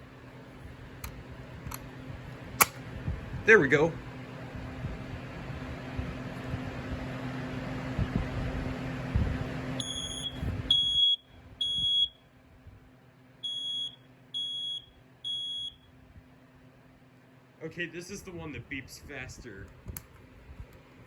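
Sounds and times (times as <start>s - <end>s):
low steady hum: 0.0s - 21.0s
smoke alarm beeping: 9.8s - 12.2s, 13.4s - 15.9s.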